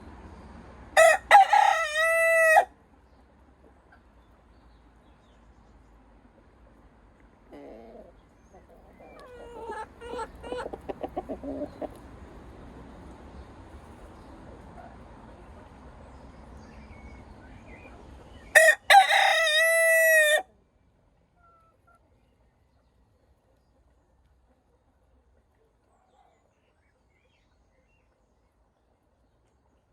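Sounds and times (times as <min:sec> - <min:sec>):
cockerel crowing: 0:01.0 - 0:02.7, 0:18.5 - 0:20.5.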